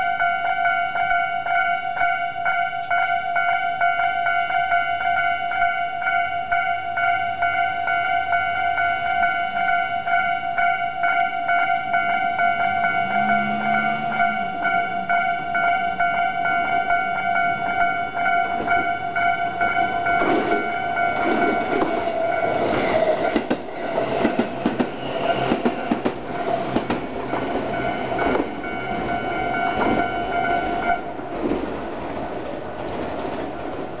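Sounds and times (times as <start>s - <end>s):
electronic crossing bell dinging: 0.0s - 31.2s
train wheels clacking: 8.3s - 34.0s.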